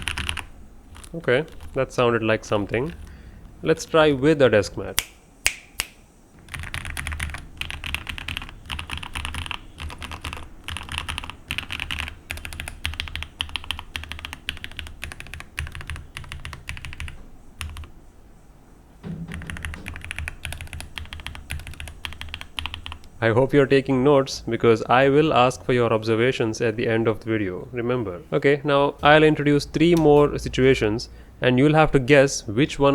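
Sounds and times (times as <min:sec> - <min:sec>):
rapid typing on mechanical keyboard: 0:00.0 - 0:01.8, 0:06.5 - 0:17.9, 0:19.3 - 0:23.1.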